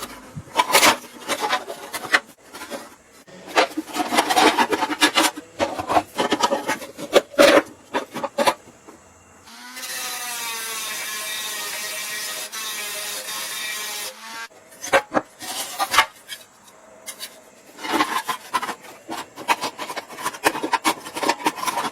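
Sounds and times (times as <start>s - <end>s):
hand scraping a surface: 0.0s - 9.0s, 14.7s - 21.9s.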